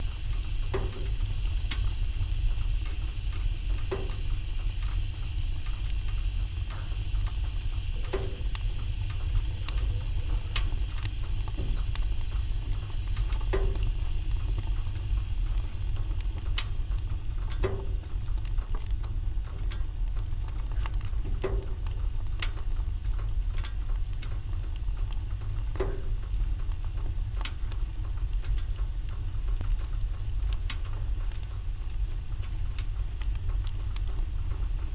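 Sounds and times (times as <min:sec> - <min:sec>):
fire popping: 0:00.0 - 0:34.9
low rumble: 0:00.0 - 0:34.9
wood fire crackling: 0:00.0 - 0:34.9.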